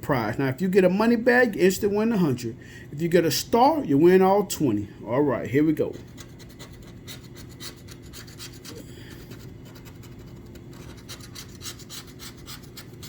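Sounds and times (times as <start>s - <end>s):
lottery ticket being scratched: 5.6s - 13.0s.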